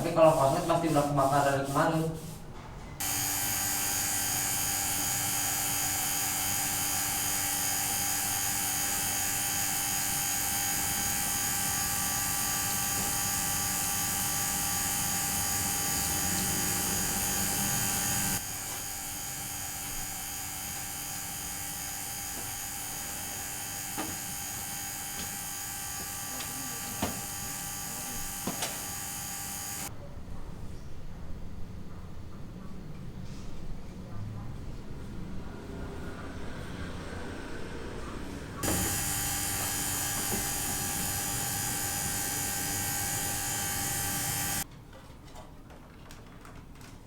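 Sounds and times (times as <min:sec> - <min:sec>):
electrical buzzing hum: 0:03.0 - 0:29.9, 0:38.6 - 0:44.6.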